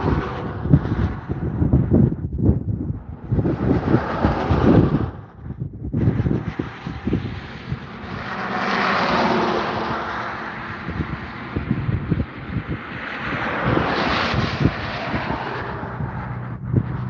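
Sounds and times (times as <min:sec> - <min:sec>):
aircraft engines flying past: 0:00.0 - 0:17.0
wind buffeting microphone: 0:00.0 - 0:17.0.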